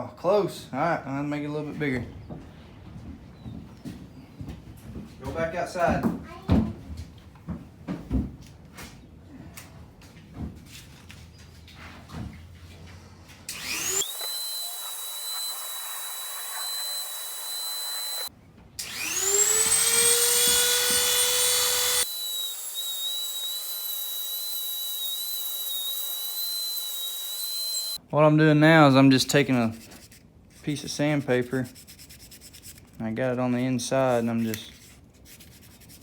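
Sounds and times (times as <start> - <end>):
rotary tool whining: 13.5 - 28.0.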